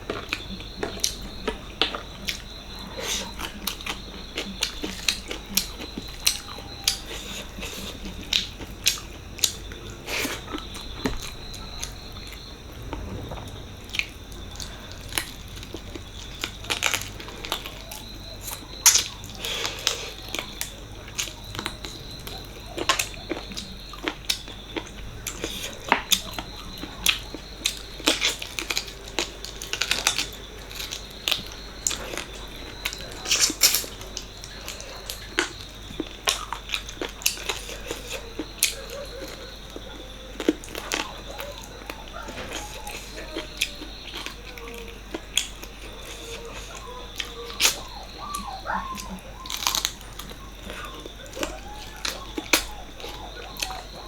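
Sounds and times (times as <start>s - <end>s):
wet chewing: 0.0s - 54.0s.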